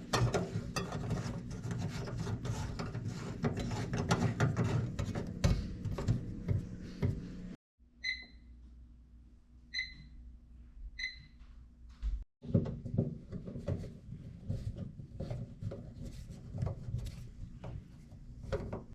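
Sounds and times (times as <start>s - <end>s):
microwave keypad beeps: 8.0s - 8.5s, 9.7s - 10.2s, 11.0s - 11.4s.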